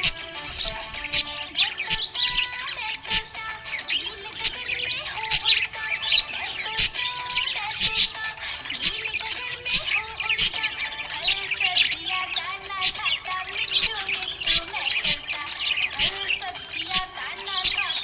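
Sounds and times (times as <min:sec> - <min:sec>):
parrots chirping: 0:00.0 - 0:18.0
shrill parrot squawks: 0:00.0 - 0:18.0.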